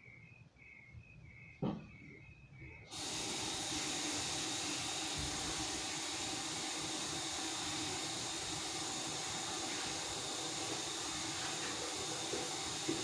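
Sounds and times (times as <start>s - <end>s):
tap water running: 2.9s - 13.0s.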